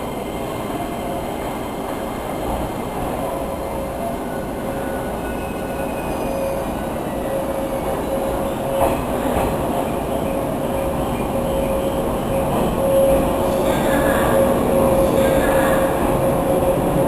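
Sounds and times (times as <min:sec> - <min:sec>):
train wheels rumbling on rails: 0:00.0 - 0:17.0
high squeal: 0:03.7 - 0:09.3, 0:11.4 - 0:16.6.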